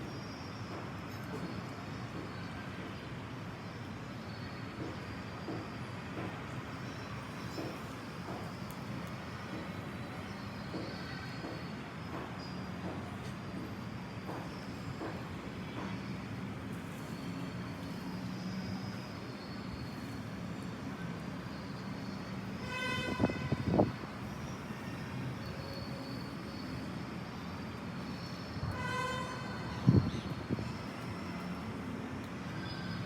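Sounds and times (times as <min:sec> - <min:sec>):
traffic noise: 0:00.0 - 0:33.0
car horn blast: 0:22.6 - 0:23.8, 0:28.8 - 0:29.5.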